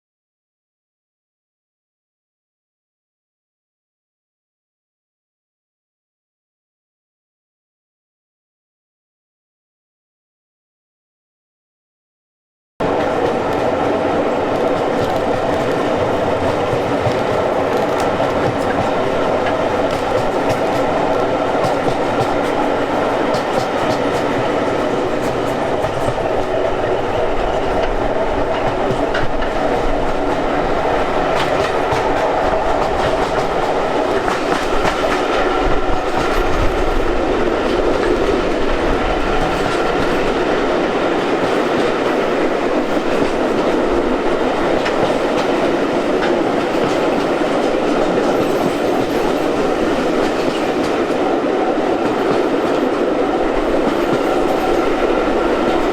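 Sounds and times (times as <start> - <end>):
train rumbling on track: 12.8 - 55.9.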